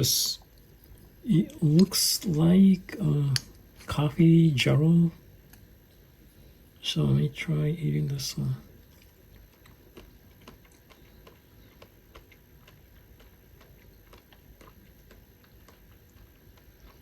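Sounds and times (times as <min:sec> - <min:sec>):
mouth chewing soft jelly: 0:00.0 - 0:04.3, 0:07.8 - 0:17.0.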